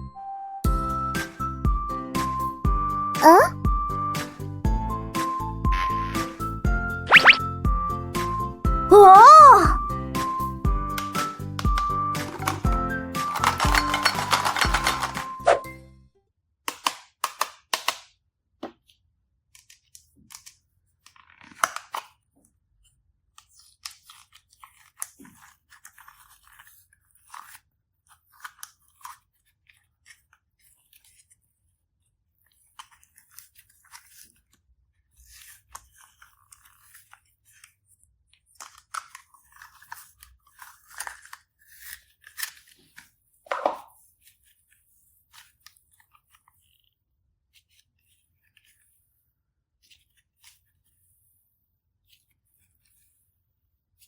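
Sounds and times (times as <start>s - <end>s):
slime squeezed by hand: 7.0s - 7.5s, 8.9s - 9.8s.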